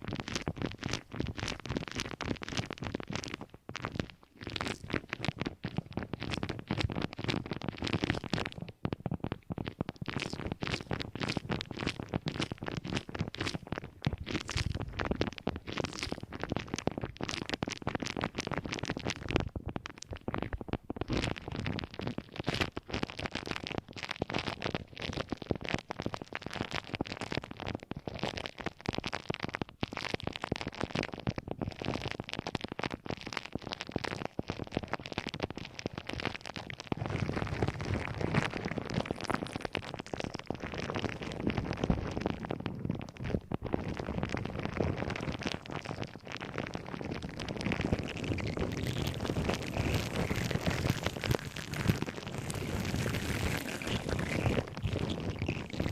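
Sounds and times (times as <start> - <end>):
crackling and scratching: 0.0 - 55.9.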